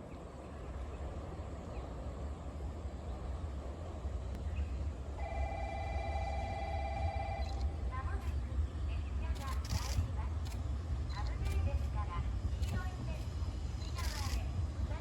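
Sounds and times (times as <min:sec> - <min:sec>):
steady low rumble: 0:00.0 - 0:15.0
electronic railway warning bell: 0:05.2 - 0:07.7.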